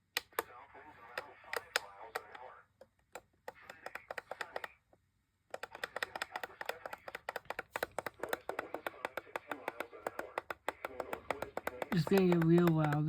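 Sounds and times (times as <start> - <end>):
rapid even clicking: 3.1 - 4.8, 5.5 - 13.0.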